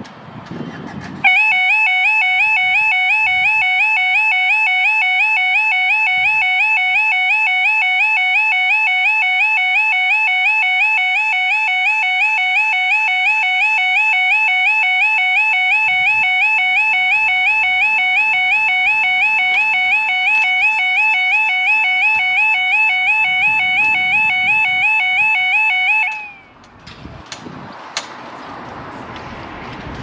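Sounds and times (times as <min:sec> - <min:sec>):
two-tone electronic warning alarm: 0:01.2 - 0:26.6.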